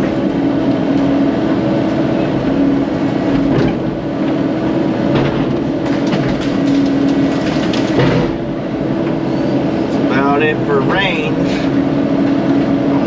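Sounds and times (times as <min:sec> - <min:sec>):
excavator diesel engine running: 0:00.0 - 0:13.0
wood and branches cracking: 0:05.4 - 0:08.5.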